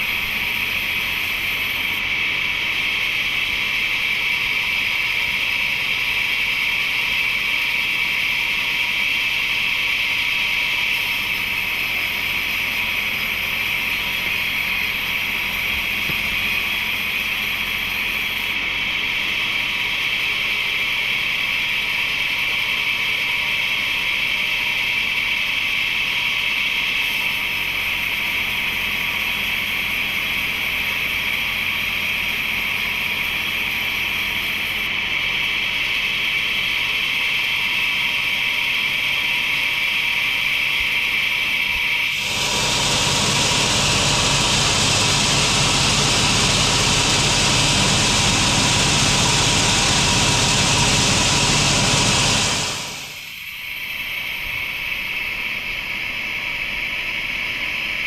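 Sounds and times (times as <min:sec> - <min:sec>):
wood-processing machinery hissing: 0:25.3 - 0:54.1.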